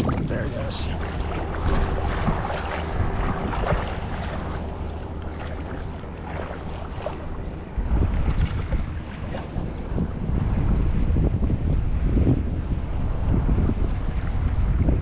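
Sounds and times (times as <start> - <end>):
water lapping and splashing: 0.0 - 15.0
wind buffeting microphone: 0.0 - 15.0.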